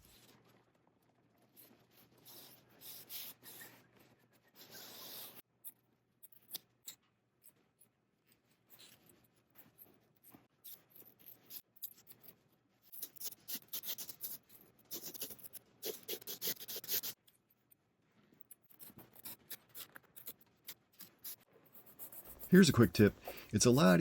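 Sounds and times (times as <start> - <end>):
scissors snipping foam: 12.9 - 17.2.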